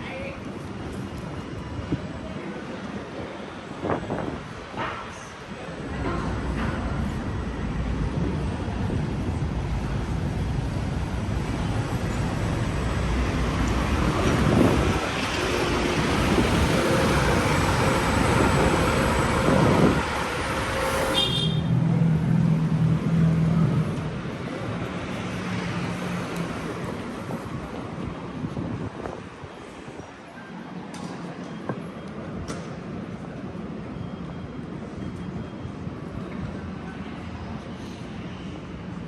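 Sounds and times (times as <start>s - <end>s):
vehicles driving past: 0.5s - 30.1s.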